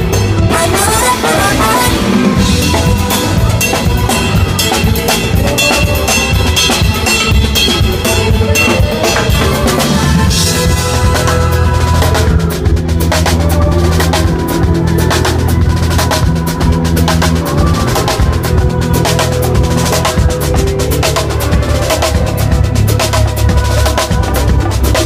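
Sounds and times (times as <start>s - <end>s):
drum kit beat: 0.0s - 25.0s
live band playing: 0.0s - 25.0s.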